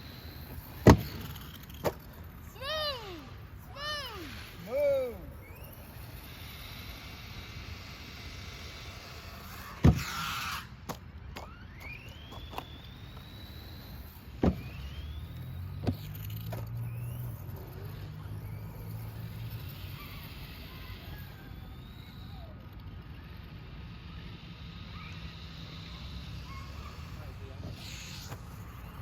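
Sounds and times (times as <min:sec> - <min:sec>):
electric motors whining: 0:00.0 - 0:29.0
rc trucks landing with knocks: 0:00.3 - 0:02.3, 0:09.4 - 0:17.7.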